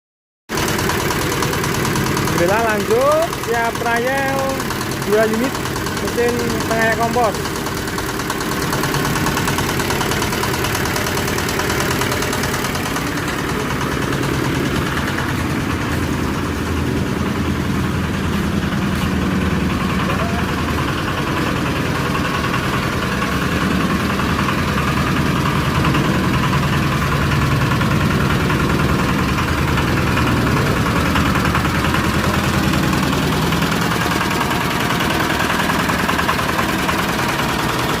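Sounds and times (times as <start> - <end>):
compost sifting machine drone: 0.5 - 38.0.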